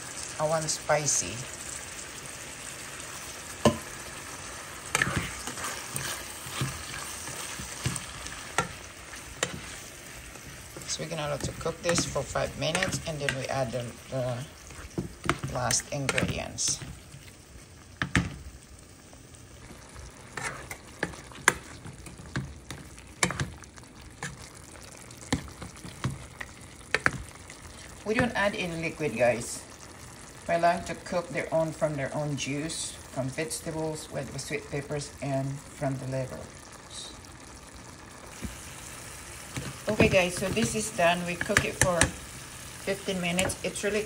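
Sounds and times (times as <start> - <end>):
food sizzling in a frying pan: 0.0 - 44.0
utensil scraping a pan: 4.9 - 16.8, 20.2 - 23.6.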